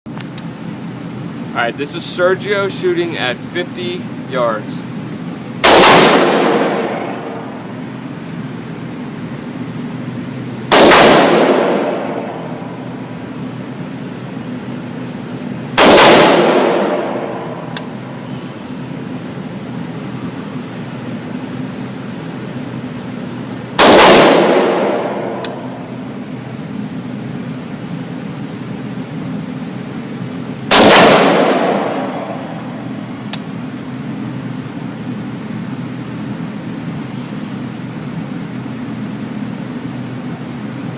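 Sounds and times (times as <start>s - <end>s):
low background hum: 0.1s - 40.9s
rifle shots: 5.6s - 7.6s, 10.7s - 12.9s, 15.8s - 17.8s, 23.8s - 25.8s, 30.7s - 32.8s.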